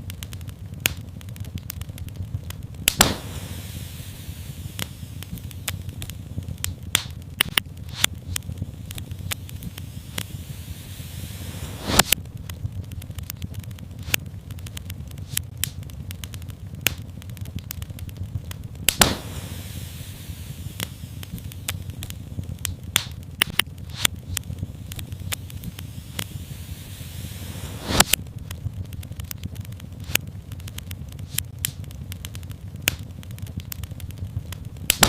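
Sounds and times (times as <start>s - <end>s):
loud fire pops: 0.0s - 35.0s
wood fire crackling: 0.0s - 35.0s
brief hiss: 9.6s - 12.2s, 26.0s - 28.2s.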